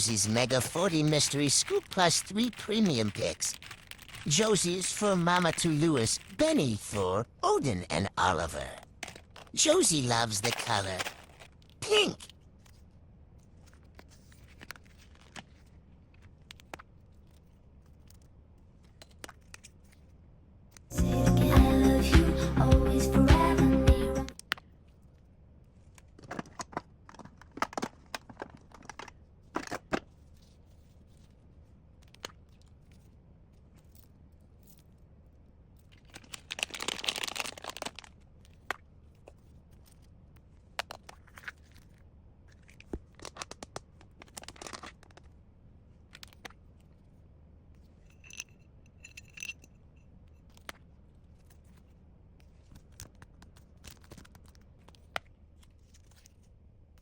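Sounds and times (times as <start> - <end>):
packaging rustling: 0.0 - 7.0, 9.1 - 11.7, 36.0 - 38.1, 43.1 - 45.3.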